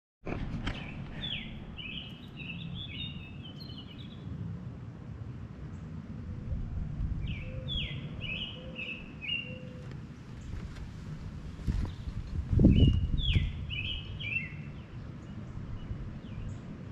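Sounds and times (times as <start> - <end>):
low rumble: 0.3 - 16.9
songbird chirping: 0.6 - 4.3, 7.2 - 16.9.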